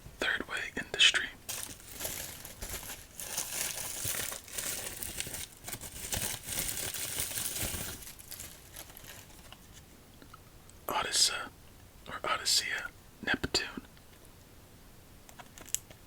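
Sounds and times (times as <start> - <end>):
crinkly packaging rustling: 1.2 - 9.9, 15.4 - 16.0.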